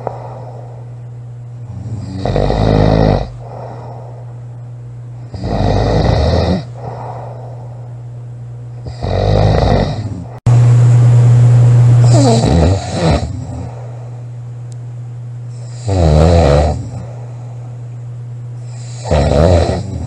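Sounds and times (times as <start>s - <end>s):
steady low hum: 0.0s - 20.0s
girl snoring loudly: 1.7s - 3.8s, 5.3s - 7.2s, 8.8s - 10.4s, 12.0s - 13.7s, 15.6s - 17.0s, 18.7s - 20.0s
loud steady low drone: 10.2s - 15.5s.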